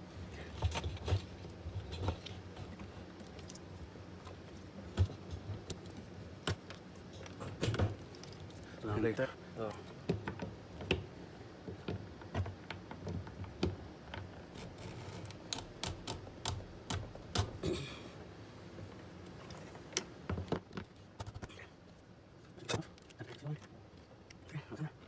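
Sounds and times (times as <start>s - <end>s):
small parts clicking and tapping: 11.7s - 17.6s.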